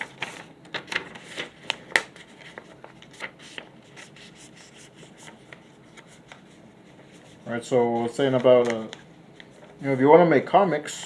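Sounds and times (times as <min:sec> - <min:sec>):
paper rustling: 0:00.0 - 0:09.8
paper snap: 0:08.3 - 0:09.0.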